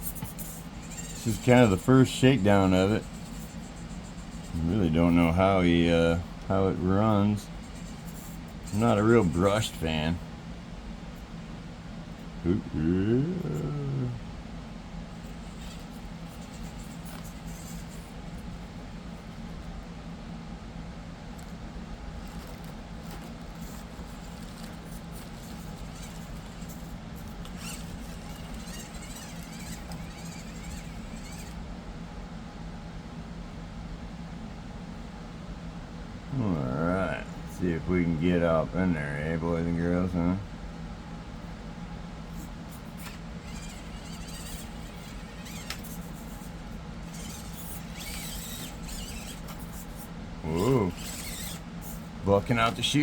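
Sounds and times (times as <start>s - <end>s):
small electric motor whining: 0.0s - 10.2s, 12.2s - 14.2s, 15.1s - 19.8s, 21.4s - 31.7s, 42.2s - 53.0s.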